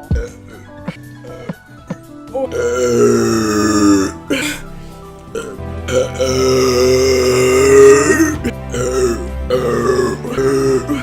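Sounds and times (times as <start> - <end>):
loud drawn-out burps: 0.0 - 1.5, 2.5 - 4.7, 5.3 - 11.0.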